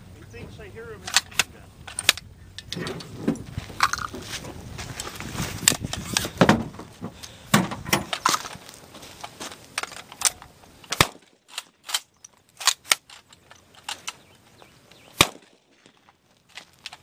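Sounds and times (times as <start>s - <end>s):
submachine gun single shots: 10.9s - 13.1s, 15.2s - 16.0s.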